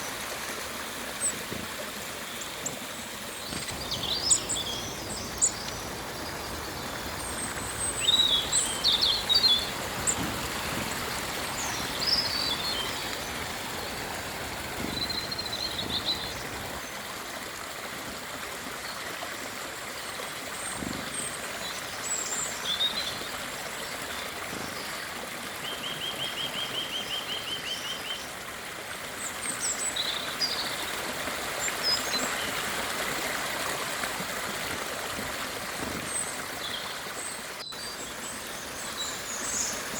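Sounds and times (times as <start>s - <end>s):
steady rushing hiss: 0.0s - 25.6s
small birds chirping: 1.2s - 17.0s.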